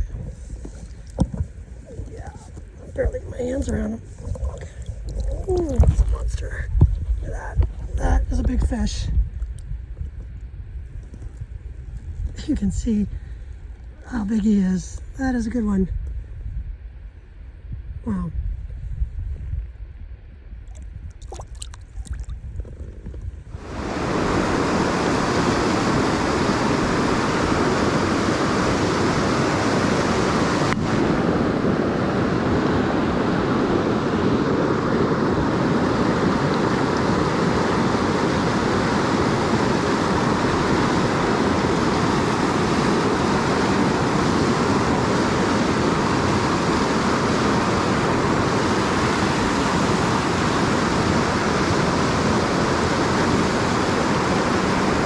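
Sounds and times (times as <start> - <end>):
creek water rushing: 21.2 - 22.3, 23.6 - 55.0.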